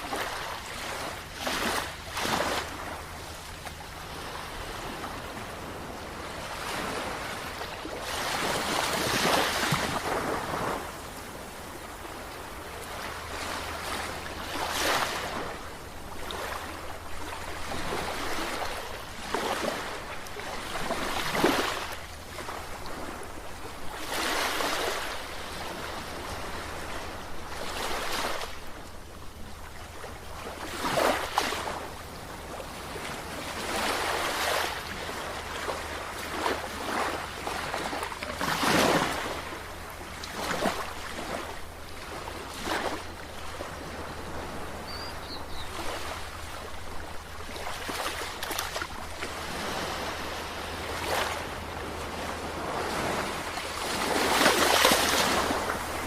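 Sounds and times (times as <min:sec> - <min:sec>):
sea waves breaking: 0:00.0 - 0:56.0.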